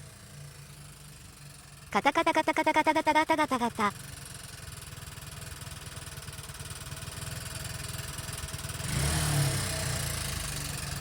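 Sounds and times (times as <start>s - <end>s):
motorcycle engine idling with knock: 4.0s - 11.0s.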